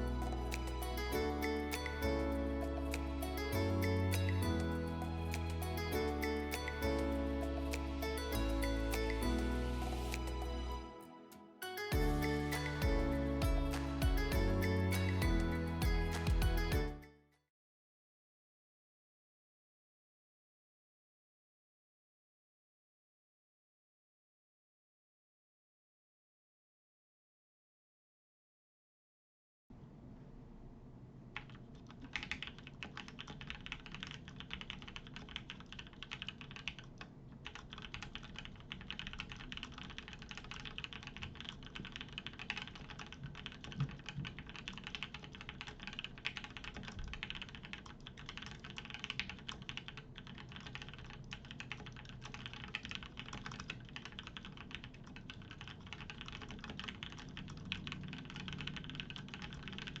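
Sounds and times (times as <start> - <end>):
mechanical keyboard typing: 31.4 - 60.0.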